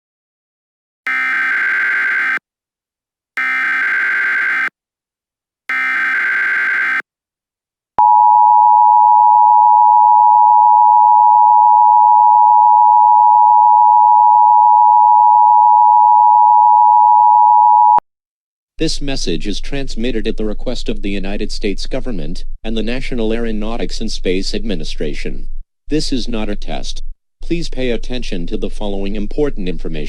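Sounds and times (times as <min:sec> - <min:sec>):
digital data warble bursts: 0:01.1 - 0:02.4, 0:03.4 - 0:04.7, 0:05.7 - 0:07.0
two-tone alarm signal: 0:01.1 - 0:02.4, 0:03.4 - 0:04.7, 0:05.7 - 0:07.0.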